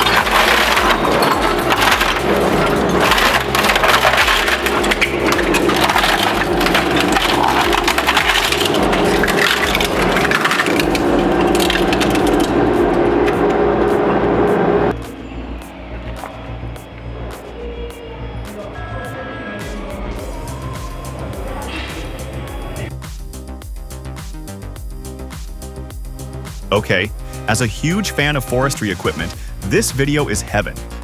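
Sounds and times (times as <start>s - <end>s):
wood splintering and cracking: 0.0s - 12.7s
machine engine drone: 0.0s - 23.0s.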